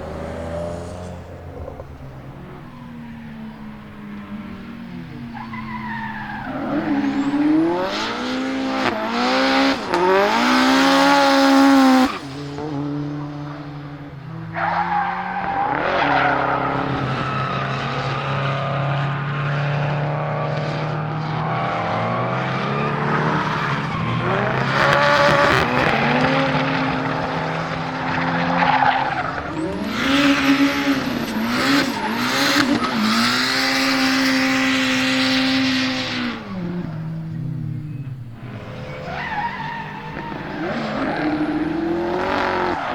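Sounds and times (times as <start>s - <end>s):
tyres squealing: 0.0s - 8.6s, 23.5s - 42.9s
car engine revving: 0.0s - 42.9s.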